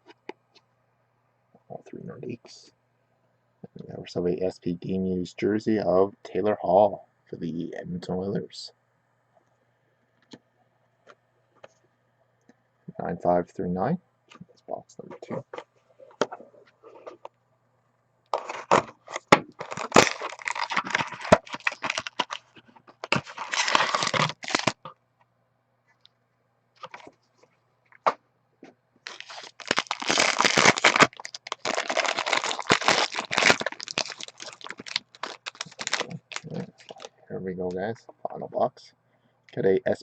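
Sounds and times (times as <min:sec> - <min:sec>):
sharp cracks and crunches: 0:18.3 - 0:24.9, 0:29.1 - 0:37.1
packaging tearing and crinkling: 0:18.4 - 0:24.8, 0:29.1 - 0:37.1.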